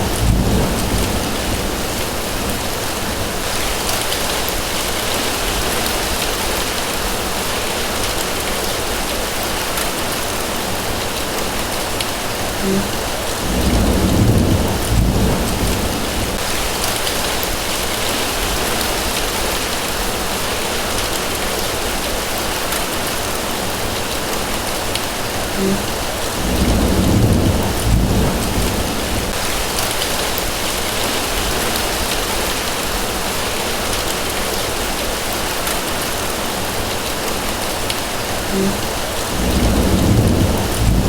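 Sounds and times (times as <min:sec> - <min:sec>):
rain falling on grass: 0:00.0 - 0:41.0.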